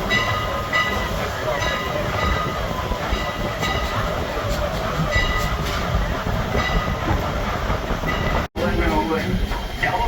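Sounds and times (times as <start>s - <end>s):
train wheels rumbling on rails: 0.0s - 10.0s.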